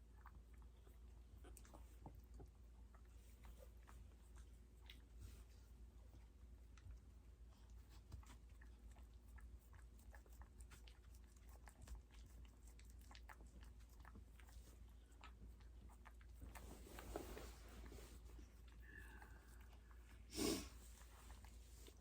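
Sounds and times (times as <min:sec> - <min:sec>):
dog licking and chewing wet clicks: 0:06.3 - 0:17.4.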